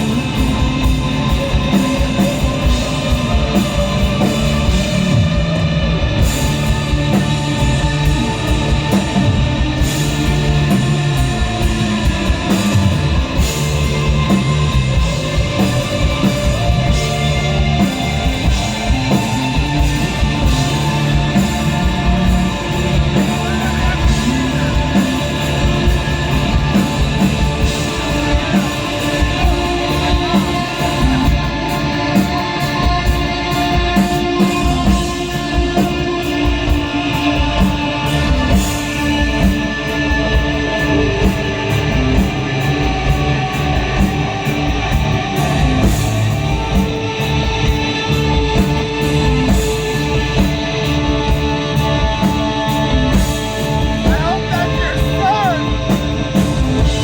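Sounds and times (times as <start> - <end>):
drums: 0.0 - 57.0
electric guitar: 0.0 - 57.0.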